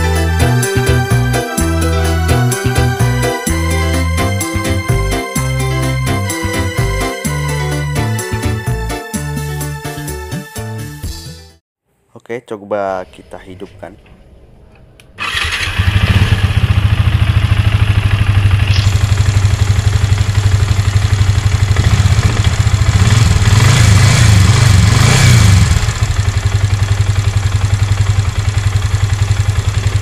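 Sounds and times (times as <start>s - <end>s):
motorcycle engine starting and revving: 14.5s - 30.0s.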